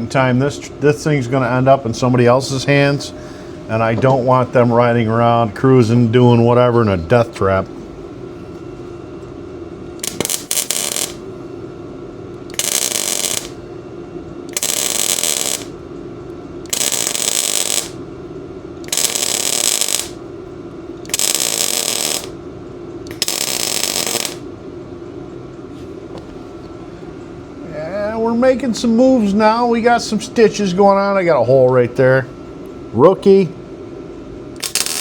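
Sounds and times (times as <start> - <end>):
steady background hum: 0.0 - 35.0
welding arc crackle: 10.0 - 11.3, 12.5 - 13.6, 14.5 - 15.8, 16.7 - 18.0, 18.9 - 20.2, 21.0 - 22.4, 23.1 - 24.5, 34.6 - 35.0.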